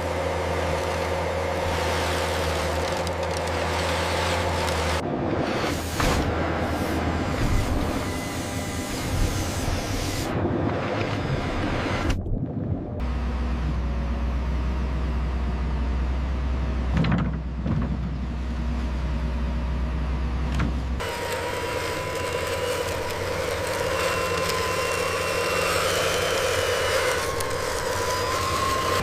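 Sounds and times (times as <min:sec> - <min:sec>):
low machine hum: 0:07.0 - 0:29.0
higher machine sound with whine: 0:21.0 - 0:29.0.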